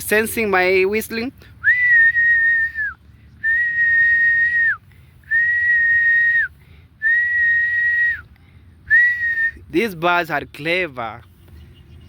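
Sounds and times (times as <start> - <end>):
person whistling long notes: 1.6 - 8.3, 8.9 - 9.6.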